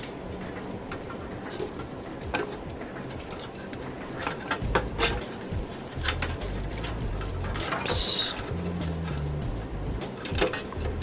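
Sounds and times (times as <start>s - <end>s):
low rumble: 4.6s - 7.7s, 8.3s - 10.0s.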